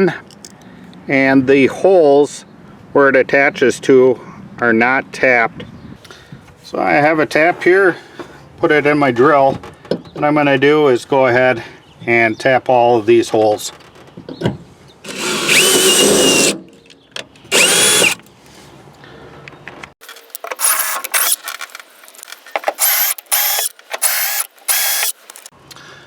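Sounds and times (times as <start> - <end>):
electric drill whining: 15.1 - 16.6, 17.5 - 18.2, 20.6 - 21.4, 22.8 - 25.5.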